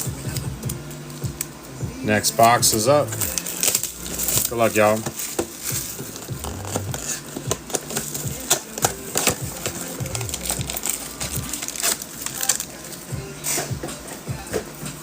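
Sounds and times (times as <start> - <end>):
background music with bass: 0.0 - 15.0
wrapper crinkling and tearing: 2.4 - 13.7.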